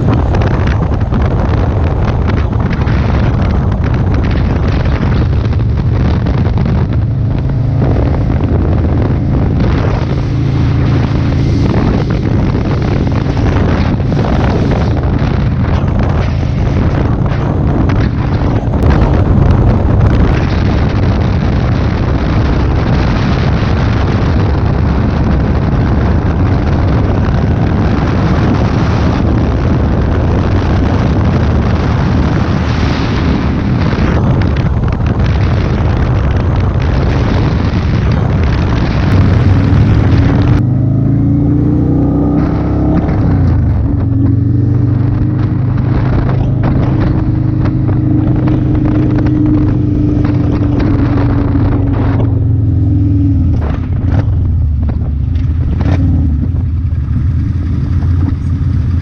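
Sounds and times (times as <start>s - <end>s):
motorcycle engine: 0.0s - 59.0s
wind rush on microphone: 0.0s - 59.0s.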